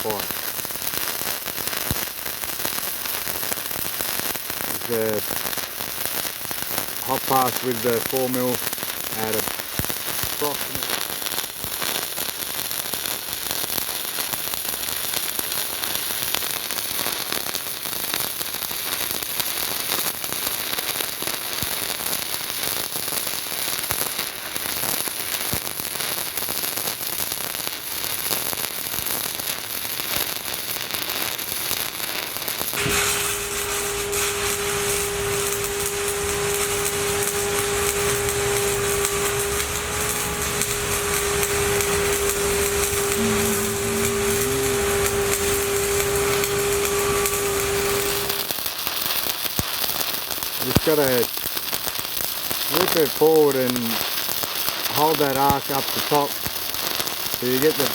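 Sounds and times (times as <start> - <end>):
welding arc crackling: 0.0 - 11.9, 31.6 - 49.4, 50.1 - 57.9
steady machine hum: 32.8 - 48.5.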